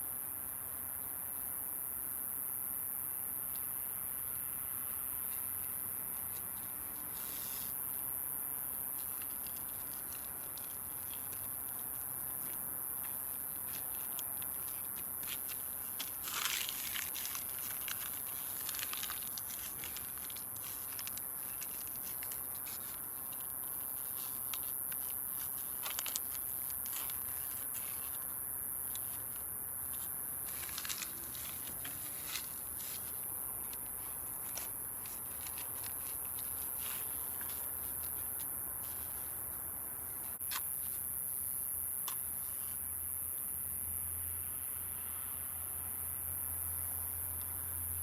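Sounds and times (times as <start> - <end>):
campfire crackling: 8.8 - 27.8.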